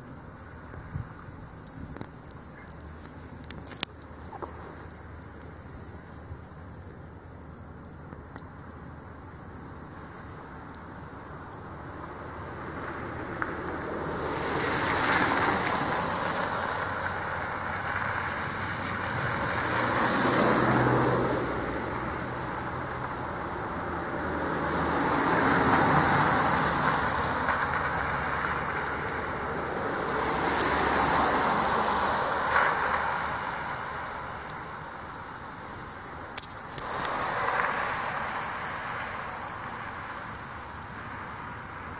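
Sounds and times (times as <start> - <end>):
tyres hissing through snow: 4.1 - 6.4, 11.8 - 41.9.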